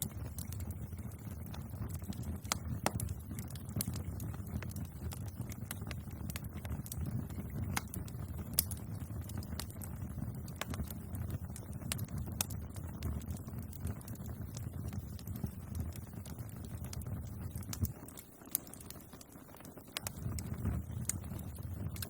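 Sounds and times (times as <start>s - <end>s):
bonfire rumbling: 0.0s - 22.0s
fire crackling and popping: 0.0s - 22.0s.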